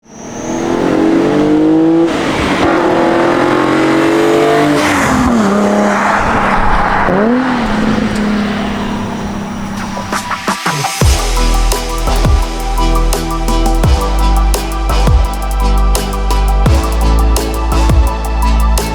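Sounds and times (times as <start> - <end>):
engine rev blip: 0.0 - 15.0
car engine accelerating: 0.0 - 18.1.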